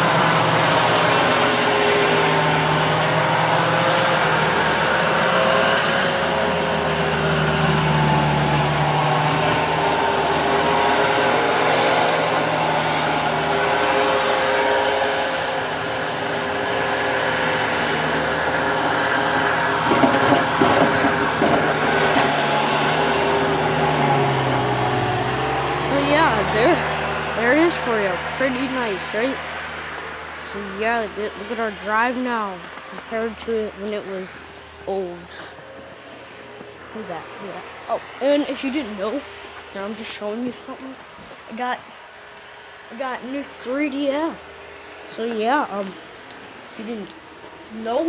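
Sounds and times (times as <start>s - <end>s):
skid steer engine running: 0.0s - 48.0s
knocks and rattles: 19.8s - 22.6s.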